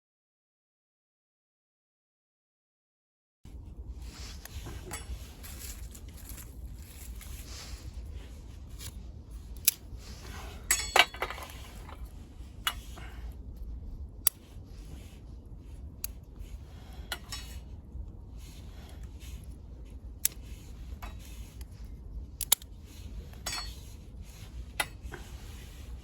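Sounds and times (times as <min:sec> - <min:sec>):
stove low rumble: 0:03.5 - 0:26.0
wood crackling and popping: 0:05.2 - 0:07.5.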